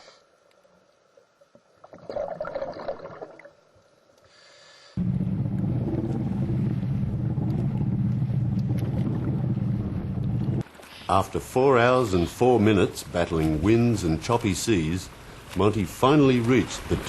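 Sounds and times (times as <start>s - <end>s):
boat motor running: 5.0s - 10.6s.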